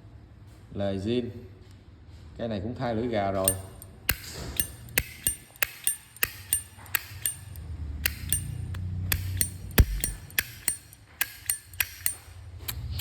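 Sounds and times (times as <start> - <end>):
lighter lid clicking open and shut: 8.1 - 13.0.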